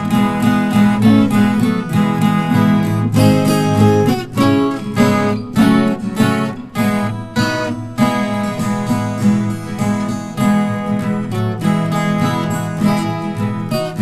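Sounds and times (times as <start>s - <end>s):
ten-string guitar strummed: 0.0s - 14.0s.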